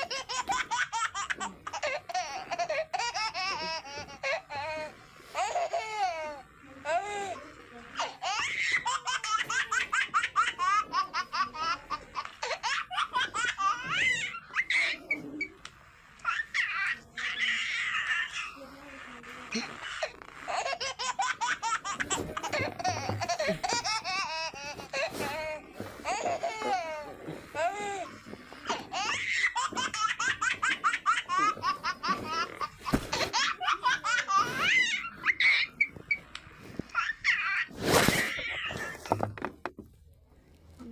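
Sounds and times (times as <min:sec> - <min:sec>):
baby laughing: 0:00.0 - 0:07.4, 0:08.0 - 0:15.5, 0:19.5 - 0:36.1.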